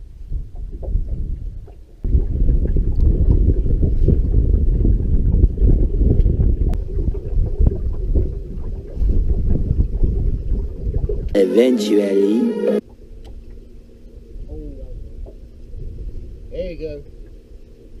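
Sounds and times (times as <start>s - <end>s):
wind buffeting microphone: 0.0s - 11.4s, 14.3s - 17.2s.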